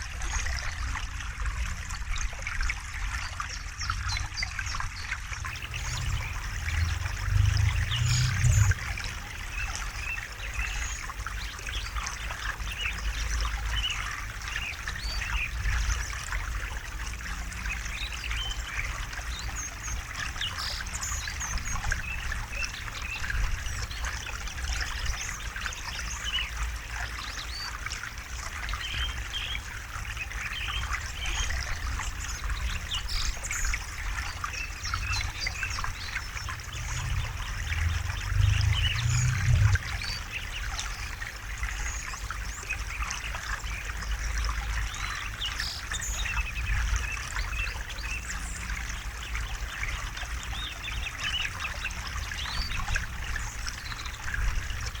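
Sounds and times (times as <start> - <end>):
river water babbling: 0.0 - 55.0
low rushing rumble: 5.5 - 10.7, 34.9 - 40.8.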